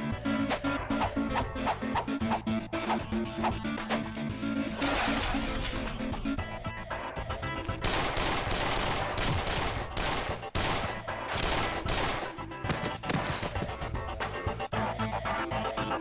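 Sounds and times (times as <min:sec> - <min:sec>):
background score music: 0:00.0 - 0:16.0
rapid gunfire bursts: 0:07.8 - 0:13.4.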